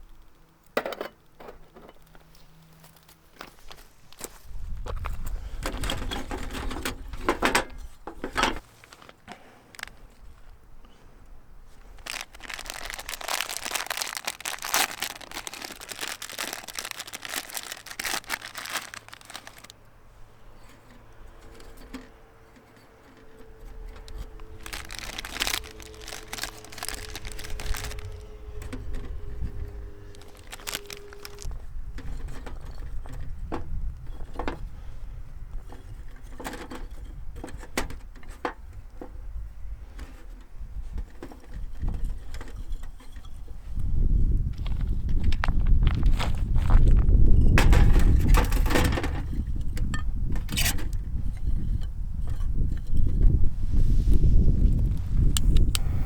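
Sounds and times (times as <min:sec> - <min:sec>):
crinkling and rustling: 0:00.0 - 0:55.8
faint low rumble: 0:23.4 - 0:32.2, 0:53.5 - 0:56.0.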